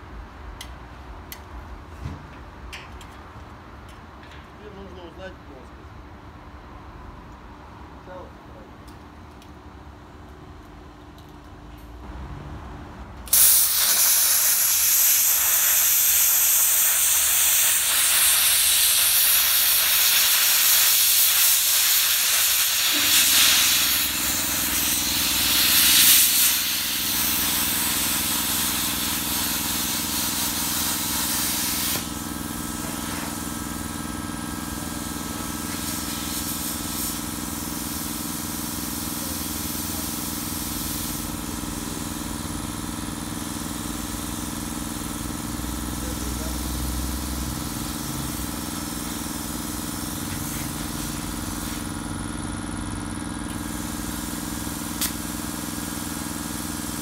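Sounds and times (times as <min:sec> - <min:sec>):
plasma cutter arc hissing: 0:13.3 - 0:52.6, 0:53.4 - 0:57.0.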